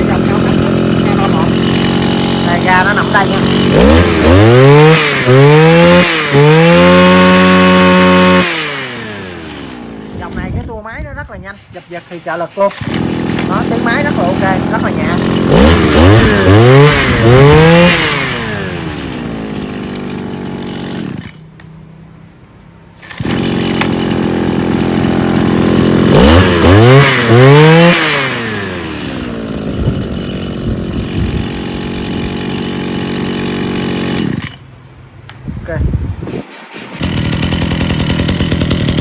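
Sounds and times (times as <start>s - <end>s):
person speaking: 0.0s - 4.1s, 10.0s - 18.0s, 35.5s - 36.0s
small two-stroke engine revving: 0.0s - 10.7s, 12.6s - 21.4s, 23.0s - 34.7s, 36.3s - 39.0s.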